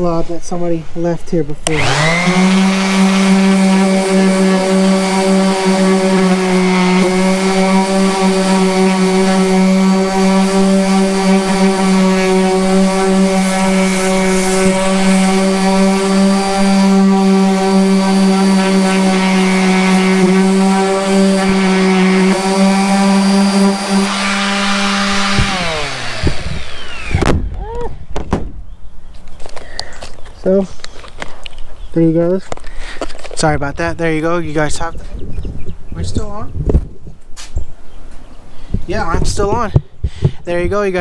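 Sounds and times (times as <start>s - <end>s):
orbital sander running: 1.6s - 27.6s.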